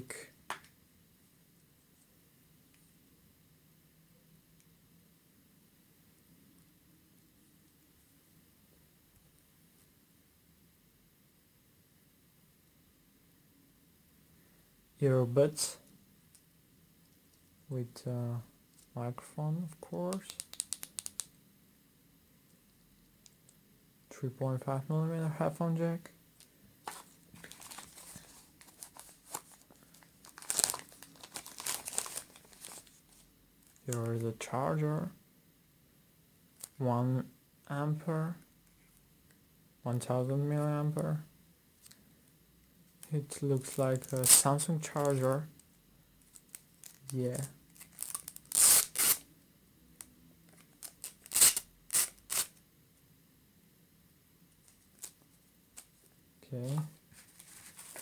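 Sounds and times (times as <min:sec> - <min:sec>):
plastic packaging crinkling: 0:26.9 - 0:33.9, 0:43.6 - 0:45.3, 0:46.2 - 0:49.2, 0:50.5 - 0:52.5, 0:57.1 - 0:58.0.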